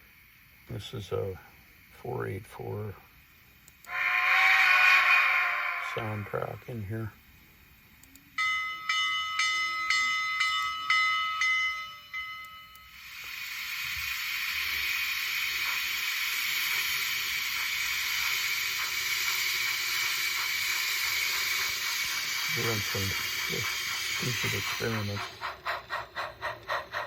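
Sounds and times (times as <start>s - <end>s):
steam hiss: 0.0s - 7.1s, 12.8s - 27.0s
locomotive bell ringing: 8.4s - 13.1s.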